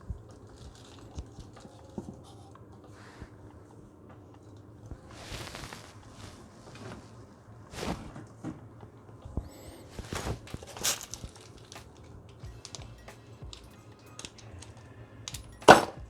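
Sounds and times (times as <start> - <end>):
hands handling small parts: 9.8 - 16.0.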